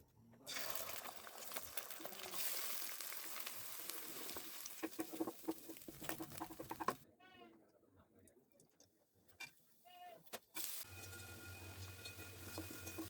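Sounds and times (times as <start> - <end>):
food sizzling in hot oil: 0.5 - 7.0, 10.6 - 13.0.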